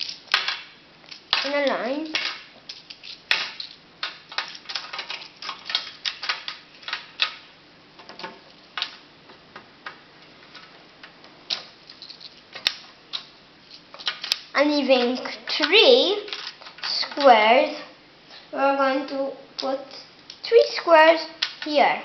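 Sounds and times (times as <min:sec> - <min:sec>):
magnetic blocks clicking: 0:00.0 - 0:09.0.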